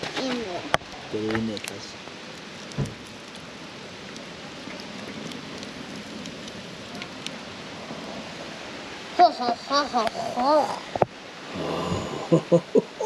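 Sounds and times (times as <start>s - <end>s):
campfire crackling and popping: 0.0s - 13.0s
soft thump: 2.8s - 3.0s.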